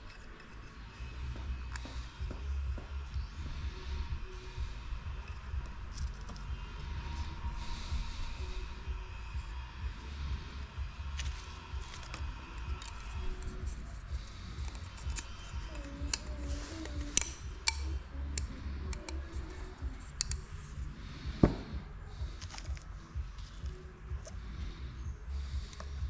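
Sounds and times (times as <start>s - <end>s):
faint background music: 0.0s - 26.0s
steady low hum: 0.0s - 26.0s
sharp clicks and taps: 14.6s - 20.6s.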